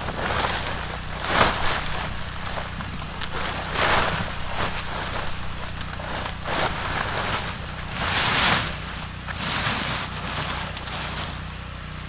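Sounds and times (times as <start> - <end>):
diesel tractor engine idling: 0.0 - 12.0.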